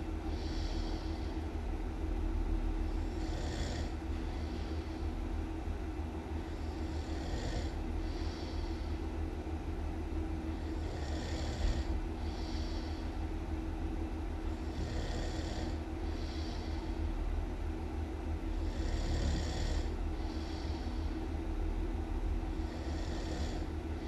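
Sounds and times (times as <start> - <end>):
steady low rumble: 0.0 - 14.9, 15.6 - 18.9, 19.7 - 24.0
person snoring loudly: 3.2 - 4.5, 10.7 - 12.7, 14.7 - 15.8, 18.6 - 19.9, 22.7 - 23.7.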